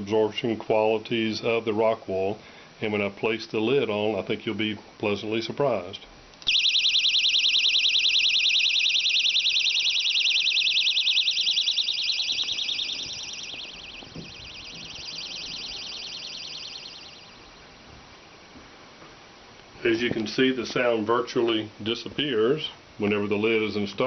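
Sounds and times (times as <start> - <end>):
panic alarm shrieking warble: 6.5 - 17.7.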